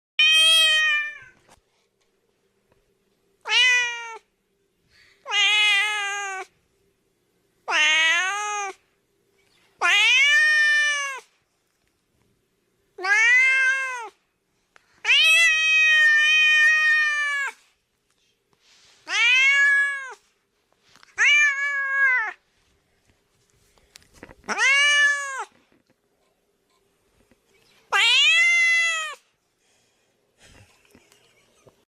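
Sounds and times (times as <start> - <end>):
cat meowing: 0.2 - 1.4, 3.4 - 4.2, 5.3 - 6.5, 7.7 - 8.8, 9.8 - 11.2, 13.0 - 14.2, 15.0 - 17.6, 19.0 - 20.2, 21.1 - 22.4, 24.5 - 25.6, 27.9 - 29.2.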